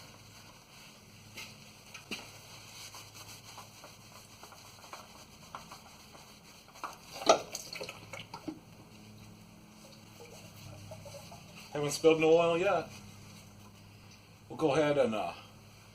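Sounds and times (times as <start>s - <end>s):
oil filter clicks and scrapes: 3.4s - 12.1s.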